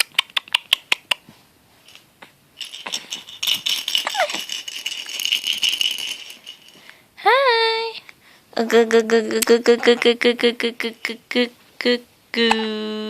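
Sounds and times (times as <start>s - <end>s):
baby rattle toy shaken: 2.6s - 6.8s.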